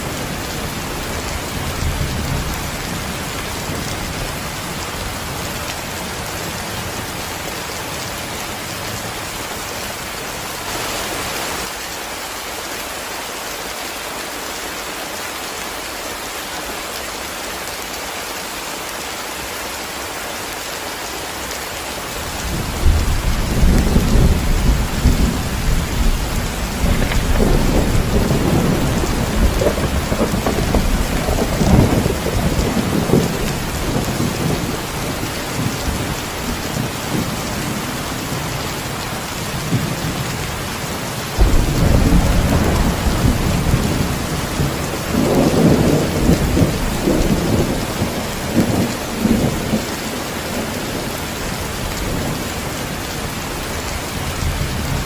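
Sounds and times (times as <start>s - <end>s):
heavy rain: 0.0s - 55.0s
thunder rumbling: 22.4s - 38.4s, 41.4s - 51.1s.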